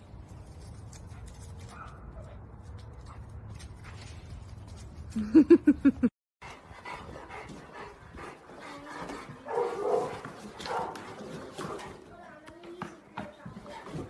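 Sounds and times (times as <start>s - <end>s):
dog barking: 1.7s - 2.3s, 9.4s - 11.0s.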